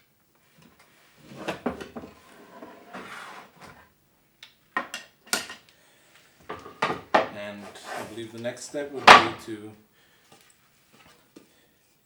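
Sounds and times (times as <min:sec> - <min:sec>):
sharp knocks: 0:09.0 - 0:09.4.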